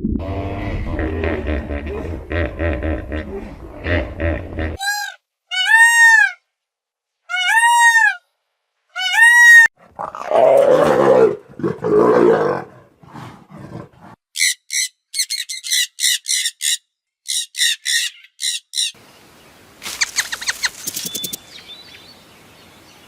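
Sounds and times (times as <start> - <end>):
rising and falling animal call: 0.2 - 6.4, 7.3 - 8.2, 9.0 - 12.6
rough growling roars: 9.8 - 14.2
high-pitched chirping calls: 19.9 - 22.1.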